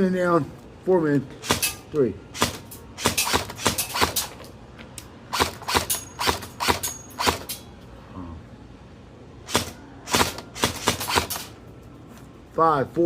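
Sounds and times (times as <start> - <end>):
airsoft gun shots: 1.4 - 4.3, 5.3 - 7.5, 9.5 - 11.5.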